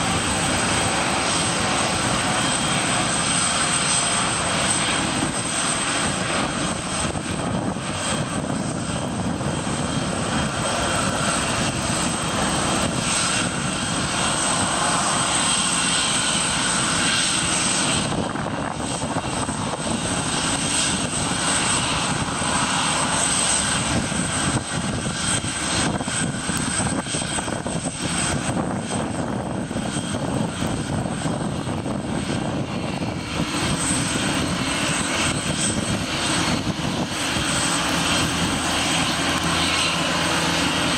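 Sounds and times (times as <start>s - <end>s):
jet engines running: 0.0s - 40.9s.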